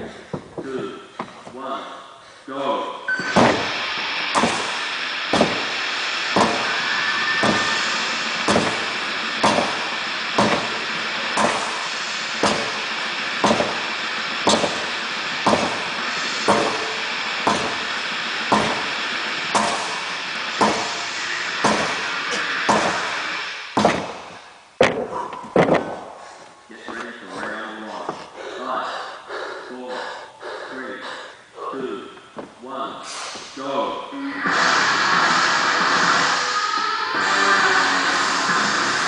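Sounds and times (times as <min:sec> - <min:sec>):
sledgehammer strikes: 0:03.2 - 0:26.0.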